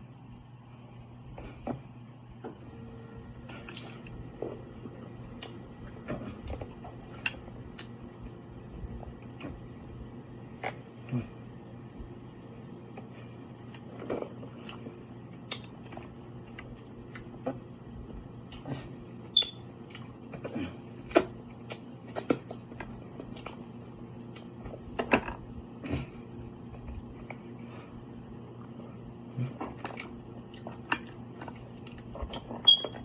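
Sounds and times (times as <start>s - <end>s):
low steady hum: 0.0s - 33.0s
wet chewing and smacking: 5.4s - 8.4s, 11.9s - 17.6s, 19.4s - 25.0s, 28.4s - 33.0s.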